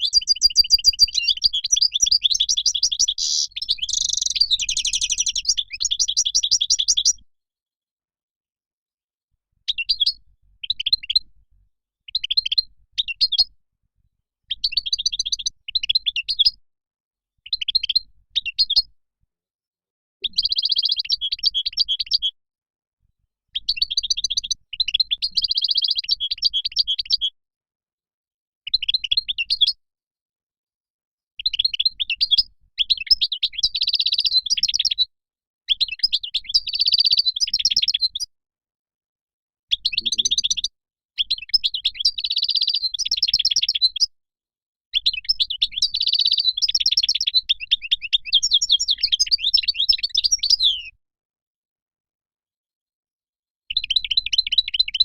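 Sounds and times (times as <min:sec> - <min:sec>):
finch twittering and trills: 0:00.0 - 0:07.2, 0:39.8 - 0:40.7.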